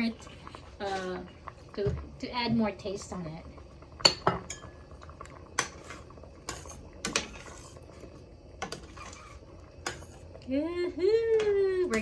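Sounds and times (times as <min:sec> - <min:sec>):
utensils clinking on pot: 0:04.0 - 0:04.8.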